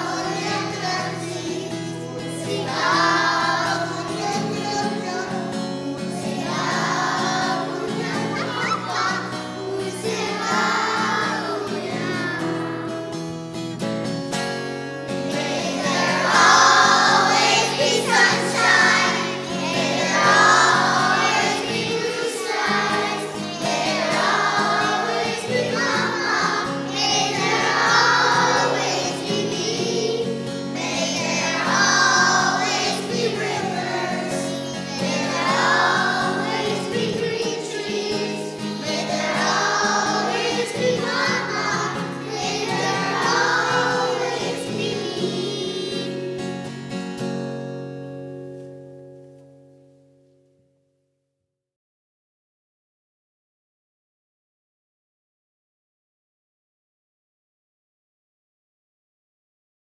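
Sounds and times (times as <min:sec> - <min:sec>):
choir singing: 0:00.0 - 0:12.9, 0:15.3 - 0:46.2.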